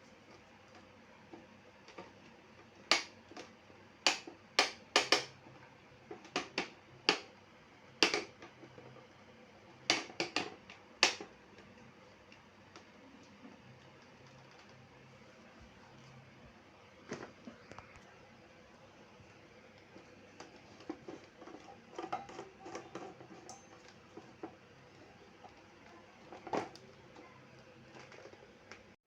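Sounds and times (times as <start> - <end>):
plastic parts clicking and knocking: 1.9 - 5.4, 6.1 - 7.3, 8.0 - 9.0, 9.8 - 11.3.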